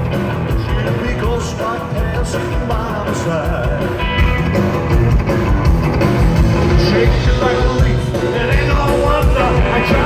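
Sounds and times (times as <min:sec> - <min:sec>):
live rock and roll band: 0:00.0 - 0:10.0
person singing: 0:06.7 - 0:10.0.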